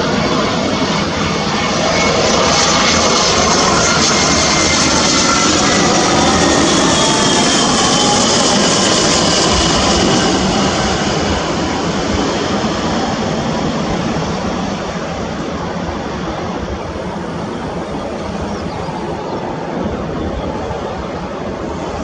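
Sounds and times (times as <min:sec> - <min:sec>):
jet engines passing: 0:00.0 - 0:22.0.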